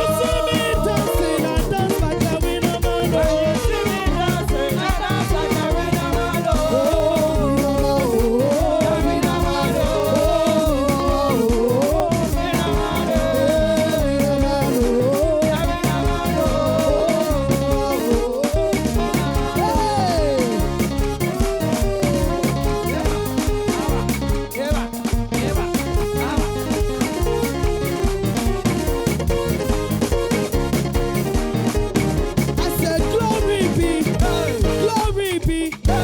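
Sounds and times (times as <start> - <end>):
band playing upbeat dance music: 0.0 - 36.0.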